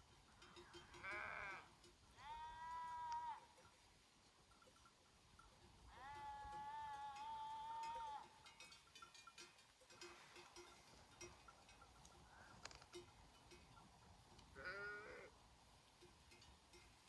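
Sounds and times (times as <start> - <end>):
small bells clinking: 0.0 - 17.0
sheep bleating: 0.9 - 3.5, 5.9 - 8.3, 14.6 - 15.3.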